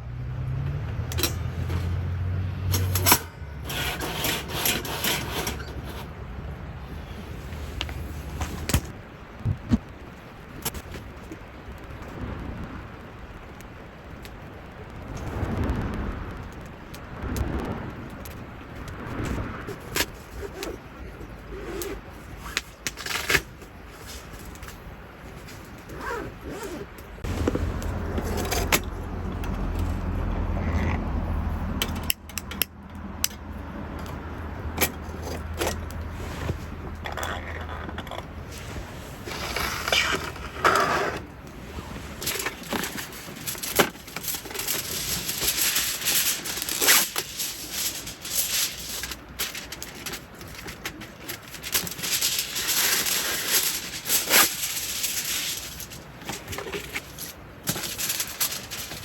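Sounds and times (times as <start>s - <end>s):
low steady hum: 5.4s - 30.5s
objects being handled: 34.8s - 59.0s.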